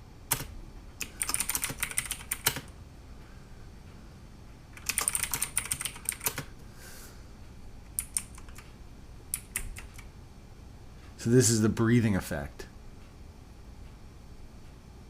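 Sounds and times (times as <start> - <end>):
clicky mechanical keyboard typing: 0.3 - 2.7, 4.8 - 6.5, 7.9 - 8.7, 9.3 - 10.1.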